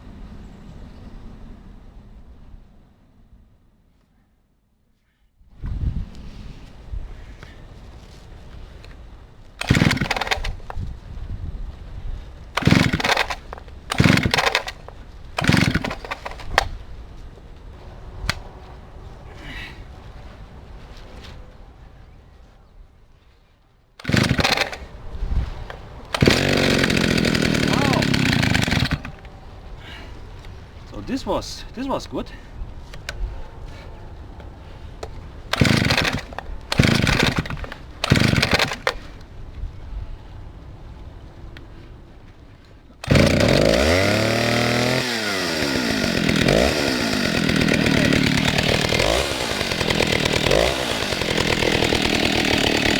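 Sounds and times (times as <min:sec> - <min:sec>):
engine turning over: 0:09.6 - 0:10.7, 0:12.6 - 0:14.8, 0:15.4 - 0:16.7, 0:24.0 - 0:25.0, 0:26.1 - 0:29.2, 0:35.5 - 0:39.1, 0:43.0 - 0:52.9
chainsaw recoil starter pulls: 0:09.6 - 0:10.8, 0:12.6 - 0:16.8, 0:24.0 - 0:25.0, 0:25.6 - 0:29.2, 0:35.5 - 0:39.2, 0:43.0 - 0:52.9
sharp clicks: 0:09.6 - 0:10.8, 0:12.6 - 0:16.8, 0:24.0 - 0:24.9, 0:25.6 - 0:29.3, 0:35.0 - 0:39.3, 0:43.0 - 0:44.4.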